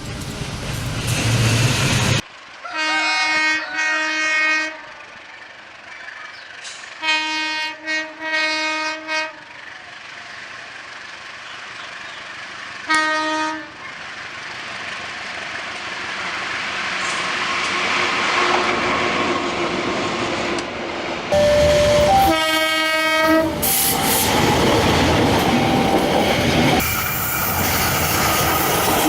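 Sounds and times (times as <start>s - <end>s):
train running noise: 0.0s - 29.0s
locomotive air horn blasts: 2.6s - 5.1s, 7.0s - 9.5s, 12.9s - 13.7s, 21.4s - 24.3s.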